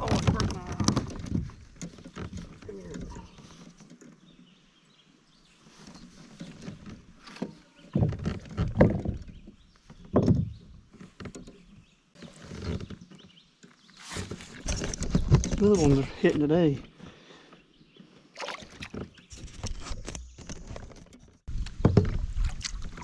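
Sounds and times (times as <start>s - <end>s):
bumps and knocks on kayak: 0.0s - 4.6s, 5.8s - 13.4s, 18.4s - 23.0s
water splashing: 18.4s - 19.1s.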